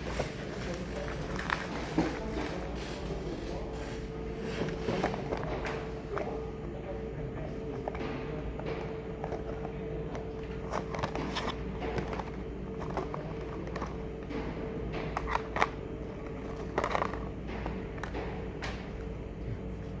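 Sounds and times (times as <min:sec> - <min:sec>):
box and plastic rustles: 0:00.0 - 0:06.3
steady low hum: 0:00.0 - 0:20.0.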